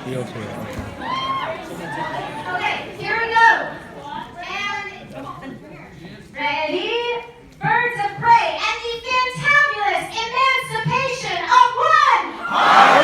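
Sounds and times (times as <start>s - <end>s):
crowd shouting and cheering: 0.0s - 3.8s, 12.3s - 13.0s.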